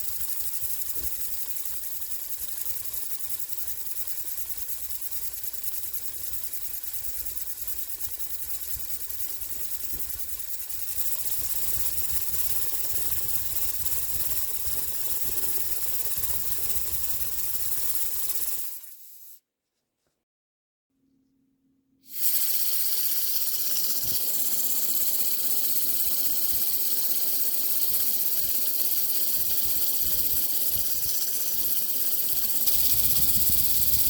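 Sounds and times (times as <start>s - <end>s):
air engine hissing and chattering: 22.1s - 24.6s.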